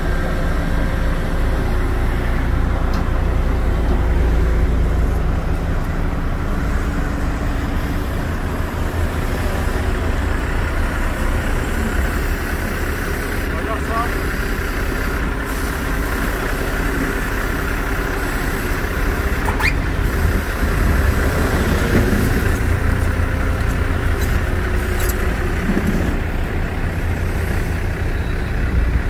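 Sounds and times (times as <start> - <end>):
heavy vehicle engine rumbling: 0.0 - 29.0.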